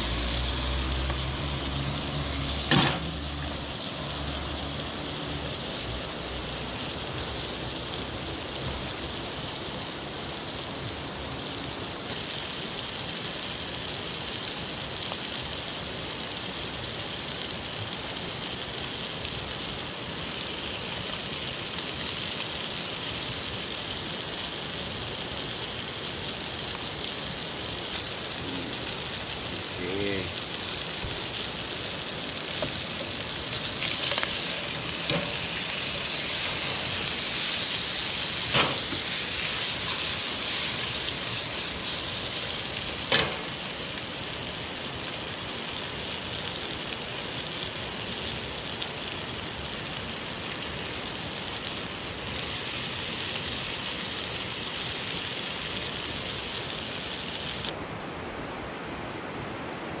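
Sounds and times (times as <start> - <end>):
fish sizzling in a pan: 0.0 - 57.7.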